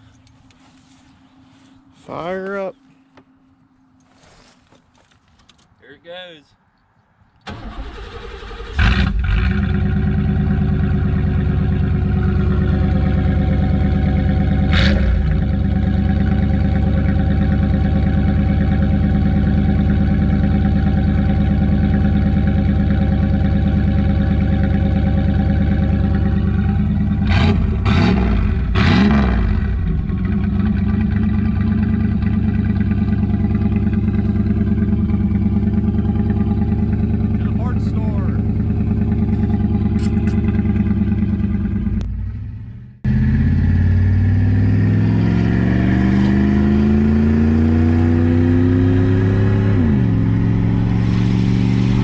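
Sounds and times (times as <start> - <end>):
car engine starting: 7.4 - 52.0
car engine idling: 7.5 - 44.2
engine revving blips: 7.5 - 52.0.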